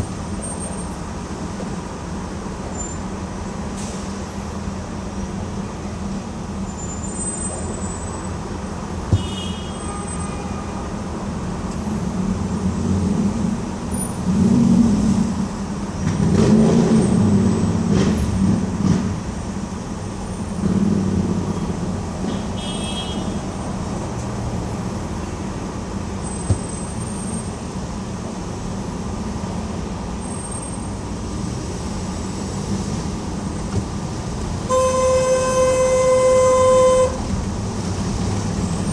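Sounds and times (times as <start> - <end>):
road traffic rumble: 0.0 - 38.9
heavy vehicles passing: 7.5 - 38.9.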